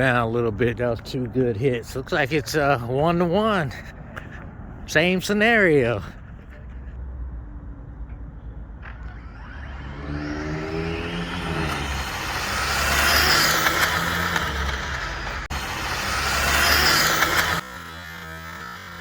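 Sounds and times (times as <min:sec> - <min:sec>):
electric rc car motor whine: 0:08.9 - 0:19.0.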